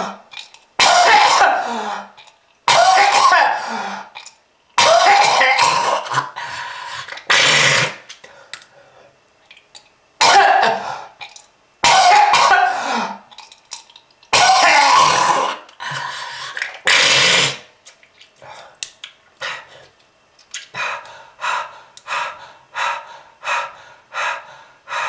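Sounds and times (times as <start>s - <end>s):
person coughing hard: 0.8s - 2.1s, 2.7s - 3.8s, 4.8s - 6.4s, 10.2s - 11.0s, 11.8s - 13.2s, 14.3s - 15.6s.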